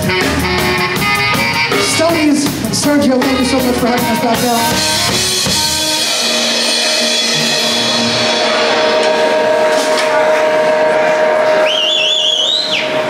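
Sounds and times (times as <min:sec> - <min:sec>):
crowd noise: 0:00.0 - 0:13.0
live band holding chord: 0:00.0 - 0:13.0
high wavering whistle: 0:11.4 - 0:13.0.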